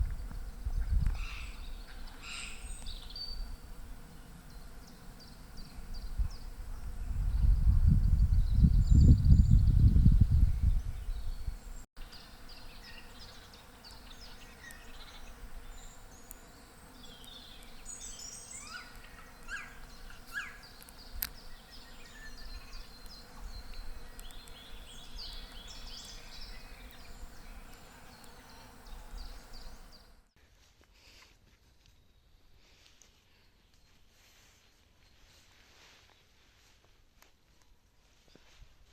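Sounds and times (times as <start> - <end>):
small birds chirping and trilling: 0.1 - 30.2.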